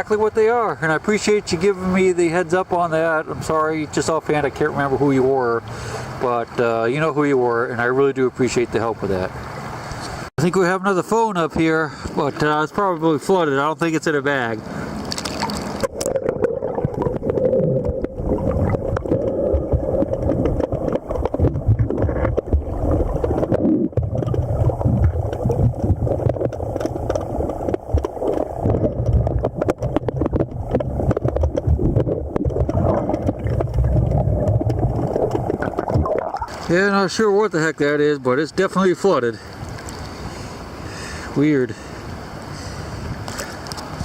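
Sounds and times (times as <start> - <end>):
underwater water rushing: 14.5 - 37.1.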